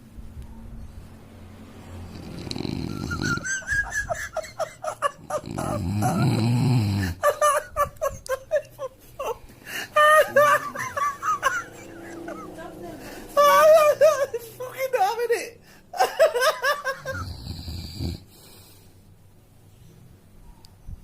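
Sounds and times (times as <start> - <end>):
person snoring: 2.0 - 3.6, 4.9 - 7.2, 17.0 - 18.8
high-pitched giggling laughter: 2.9 - 15.0, 16.0 - 17.2.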